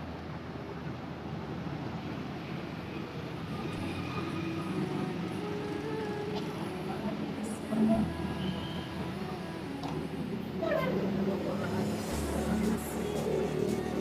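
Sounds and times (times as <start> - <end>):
bus engine idling: 0.0 - 14.0.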